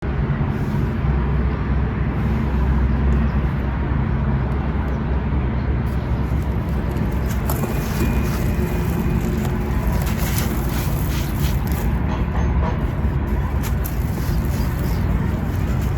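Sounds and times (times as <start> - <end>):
steady low rumble: 0.0 - 15.9
faint crisp crackles: 5.9 - 12.0, 13.3 - 15.9
sand-cement crunching and crumbling: 5.9 - 12.1, 12.8 - 15.9.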